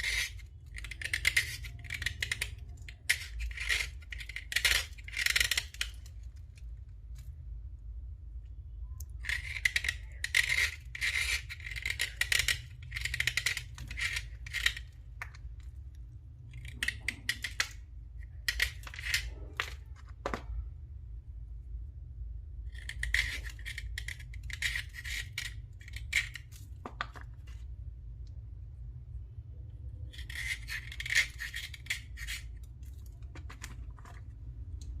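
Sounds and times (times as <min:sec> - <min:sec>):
scratchy scraping on slate: 0:00.0 - 0:06.1, 0:09.2 - 0:15.4, 0:16.5 - 0:20.0, 0:22.7 - 0:27.6, 0:30.1 - 0:34.3
low steady hum: 0:00.0 - 0:35.0.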